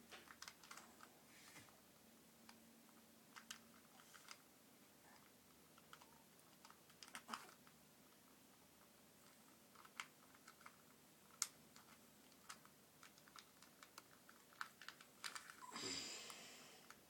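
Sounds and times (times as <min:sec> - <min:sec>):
puzzle clicking as twisted: 0:00.2 - 0:00.8, 0:05.8 - 0:07.7, 0:09.2 - 0:15.6.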